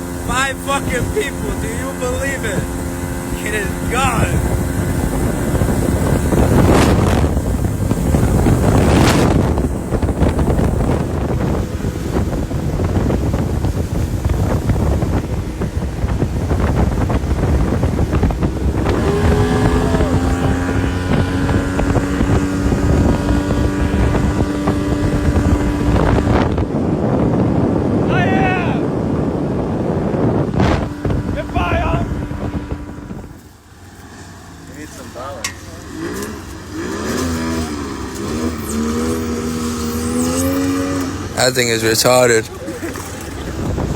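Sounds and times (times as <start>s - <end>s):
outboard motor running: 0.0s - 43.9s
water rushing past hull: 0.0s - 43.9s
wind buffeting microphone: 0.0s - 43.9s
water splashing: 35.4s - 43.9s.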